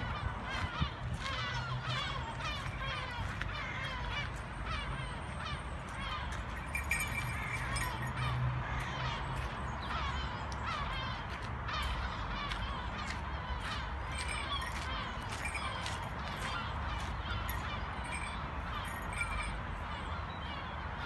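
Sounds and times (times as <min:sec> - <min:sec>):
birds chirping: 0:00.0 - 0:21.0.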